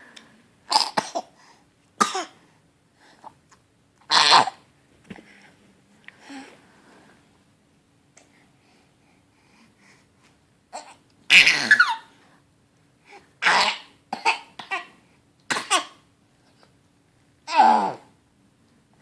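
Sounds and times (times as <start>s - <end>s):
person coughing harshly: 0.7s - 1.3s.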